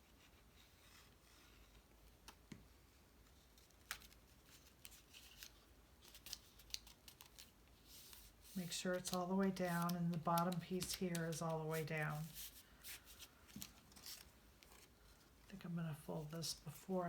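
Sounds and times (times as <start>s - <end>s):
cardstock clicks and taps: 9.0s - 11.4s.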